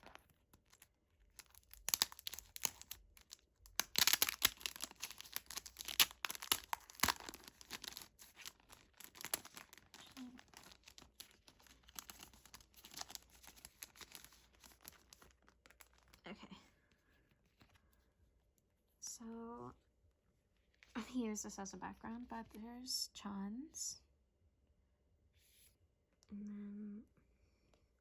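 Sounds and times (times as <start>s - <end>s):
paper and plastic crinkling: 0.0s - 16.3s.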